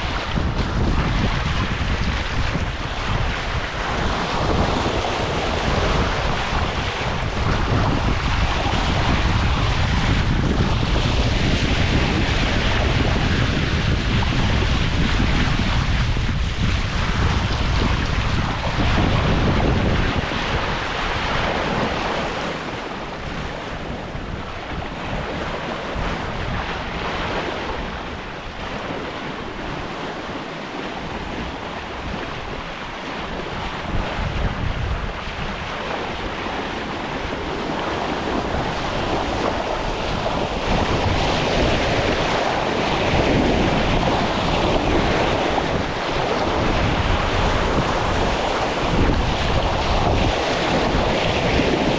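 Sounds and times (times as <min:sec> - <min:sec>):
rush of waves: 0:00.0 - 0:51.9
wind buffeting microphone: 0:00.0 - 0:51.9.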